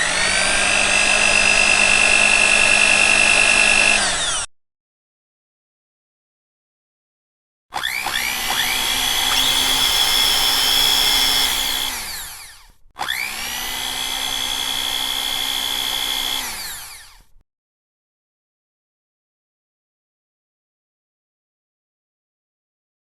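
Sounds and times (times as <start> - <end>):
electric blender motor whining: 0.0 - 4.5, 7.8 - 17.3.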